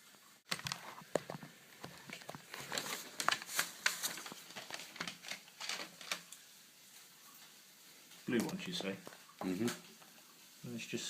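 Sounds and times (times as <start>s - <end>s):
packaging crinkling: 0.5s - 6.5s.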